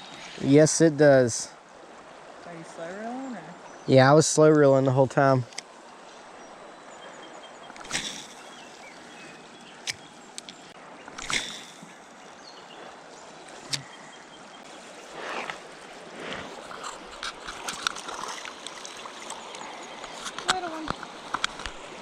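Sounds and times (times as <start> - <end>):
river water flowing: 0.0 - 22.0.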